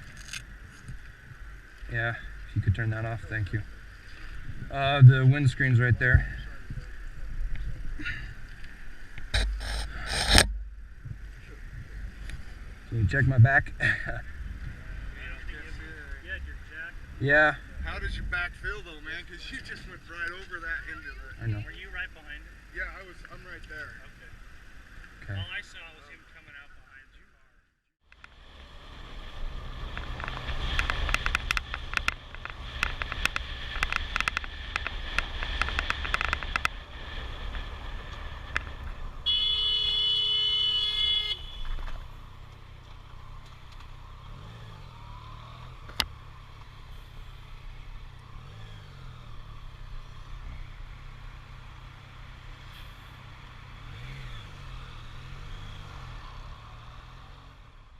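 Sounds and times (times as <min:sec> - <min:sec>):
sharp crackling clicks: 0:00.0 - 0:01.9, 0:28.1 - 0:28.4, 0:29.8 - 0:39.0, 0:41.7 - 0:44.0
vehicle low rumble: 0:00.0 - 0:57.9.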